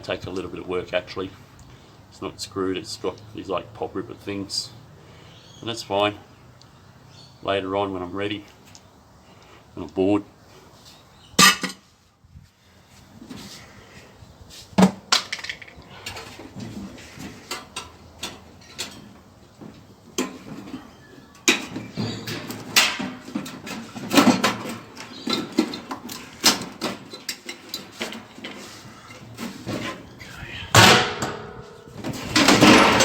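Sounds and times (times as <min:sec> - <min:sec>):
metallic knocks and clanks: 0:20.2 - 0:28.6, 0:30.7 - 0:33.0.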